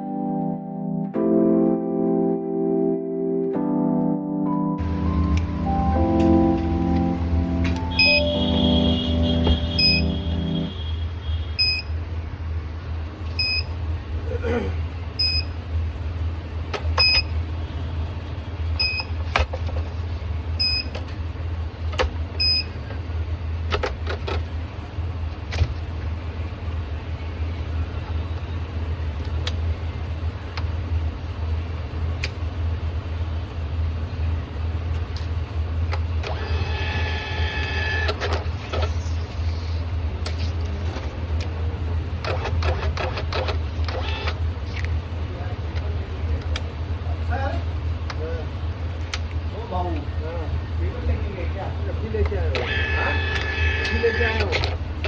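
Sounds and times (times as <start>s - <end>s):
steady low hum: 4.8s - 23.7s
thermal printer beep: 7.7s - 10.9s, 11.6s - 11.9s, 13.4s - 13.7s, 15.2s - 15.6s, 17.0s - 17.3s, 18.8s - 19.2s, 20.6s - 20.9s, 22.4s - 22.8s, 36.3s - 38.8s, 52.6s - 54.5s.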